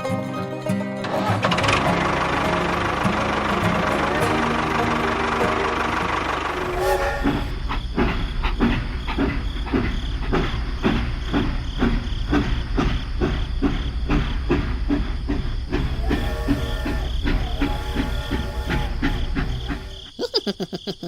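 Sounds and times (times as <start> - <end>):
machine clacking: 1.0 - 20.1
small machine humming: 15.9 - 20.1.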